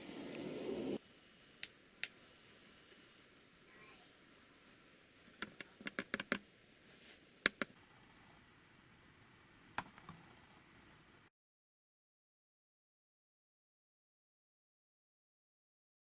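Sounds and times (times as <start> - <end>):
laptop clicks: 5.4 - 6.4, 7.4 - 7.8.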